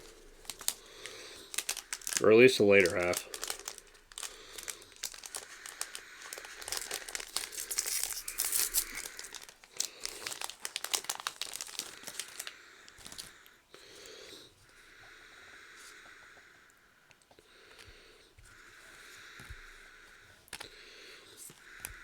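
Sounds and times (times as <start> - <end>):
wrappers crinkling and tearing: 0.0 - 13.4.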